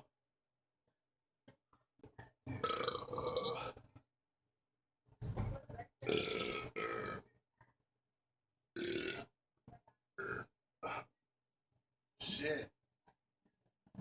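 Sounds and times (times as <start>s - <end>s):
man belching: 2.6s - 3.8s, 8.8s - 9.2s.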